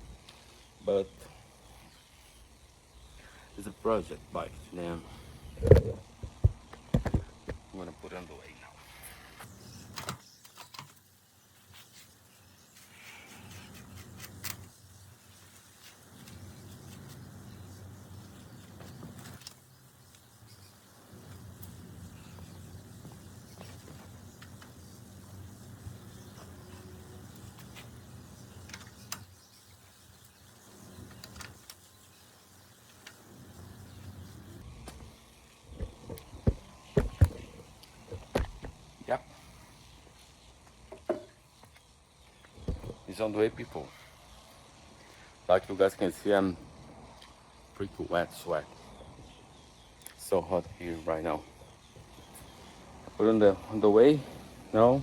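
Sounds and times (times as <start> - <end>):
sharp thumps on tire: 5.6 - 7.7, 35.7 - 38.8.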